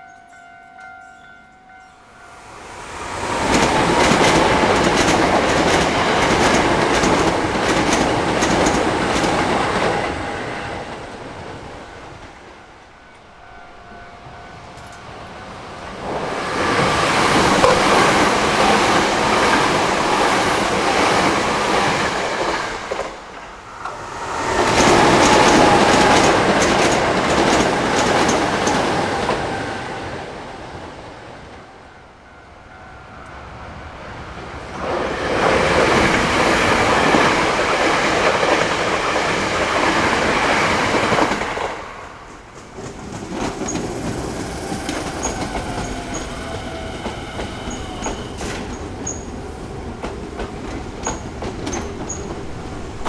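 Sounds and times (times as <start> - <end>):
electric trains passing: 0.0 - 53.0
wheels clattering over rail joints: 3.4 - 12.5, 24.6 - 29.4.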